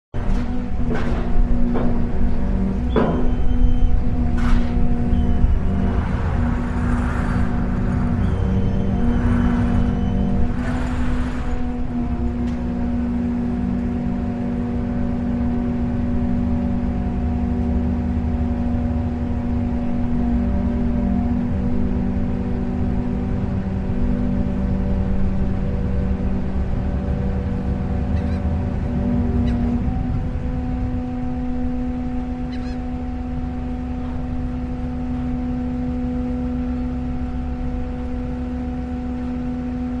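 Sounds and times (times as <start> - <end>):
boat engine rumbling: 0.1 - 40.0.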